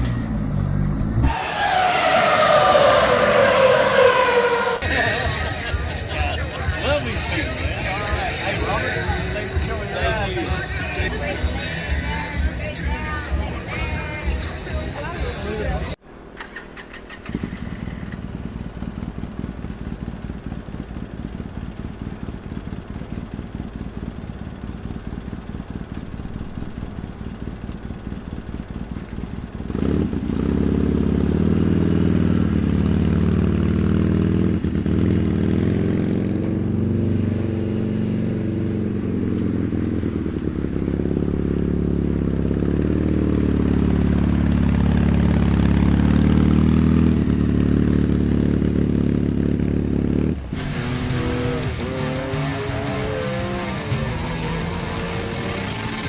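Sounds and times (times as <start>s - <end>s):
hot rod engine running: 17.2s - 56.0s.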